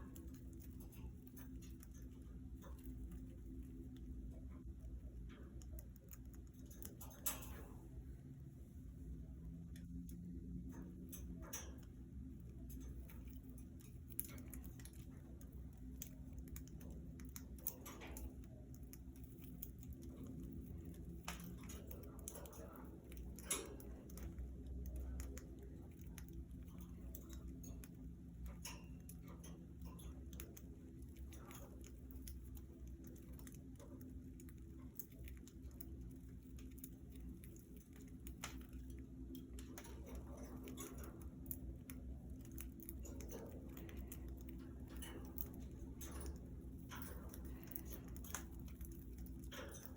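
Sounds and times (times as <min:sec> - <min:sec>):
steady low hum: 0:00.0 - 0:49.9
budgerigars clicking and scratching: 0:10.9 - 0:49.9.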